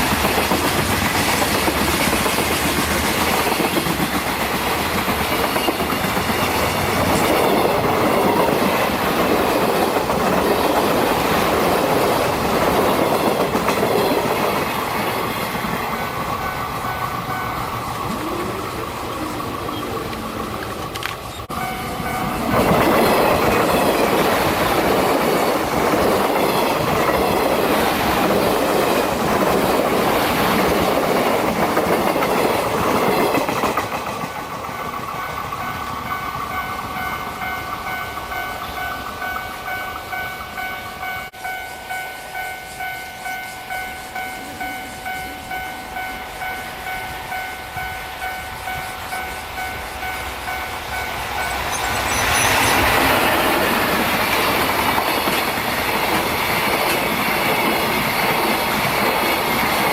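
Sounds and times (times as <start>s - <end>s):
train wheels clattering over rails: 0.0s - 18.4s, 19.4s - 39.5s, 48.6s - 59.9s
level crossing alarm bell: 21.5s - 24.0s, 36.5s - 52.8s.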